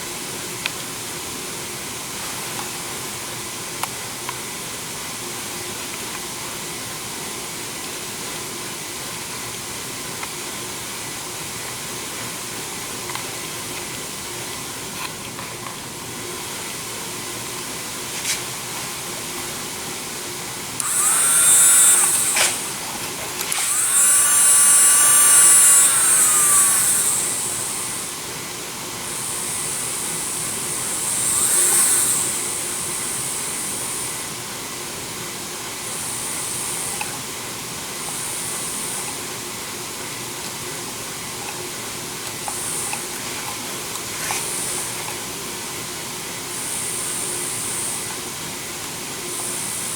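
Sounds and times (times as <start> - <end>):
electric micromotor drill whining: 20.7 - 28.4, 29.1 - 34.4, 35.9 - 37.2, 38.0 - 39.2, 42.3 - 45.3, 46.6 - 48.2, 49.3 - 49.9.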